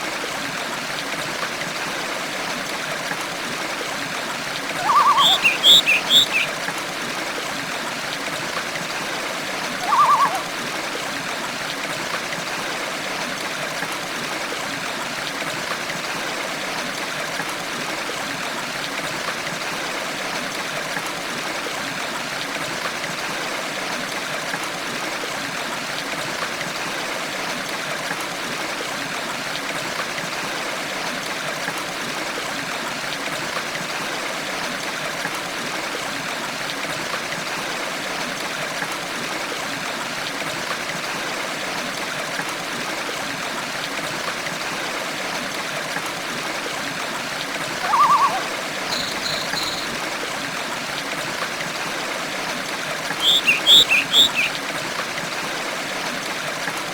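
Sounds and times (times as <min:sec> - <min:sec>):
stream rushing: 0:03.6 - 0:06.6, 0:08.9 - 0:11.5, 0:46.5 - 0:51.1, 0:51.8 - 0:54.7
bird chirps: 0:04.8 - 0:06.5, 0:09.8 - 0:10.5, 0:47.8 - 0:50.0, 0:53.2 - 0:54.6.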